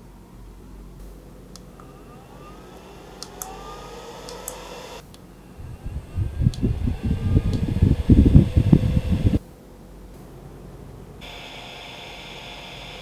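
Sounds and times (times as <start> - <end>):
fan motor whining: 0.0 - 9.4, 11.2 - 13.0
sharp clicks: 1.5 - 9.4
wind buffeting microphone: 4.6 - 9.4.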